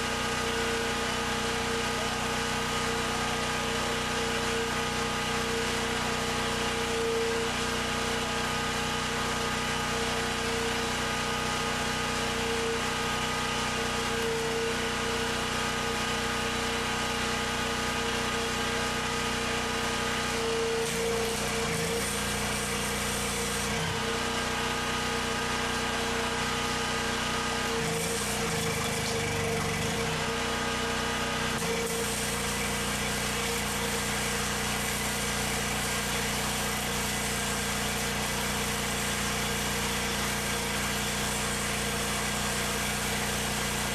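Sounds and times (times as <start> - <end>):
generator engine running: 0.0 - 43.9
hiss: 31.8 - 43.9.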